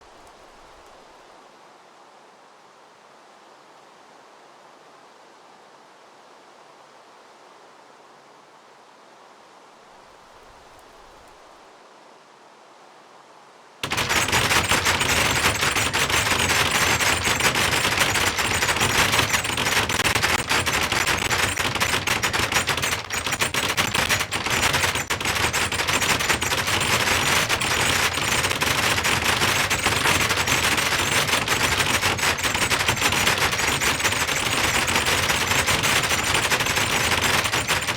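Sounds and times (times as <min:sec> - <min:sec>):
fence rattling rapidly: 0:13.8 - 0:37.9.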